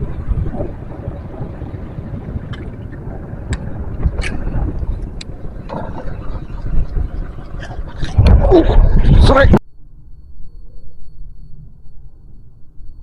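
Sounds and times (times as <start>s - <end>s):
wind rumbling on microphone: 0.0s - 13.0s.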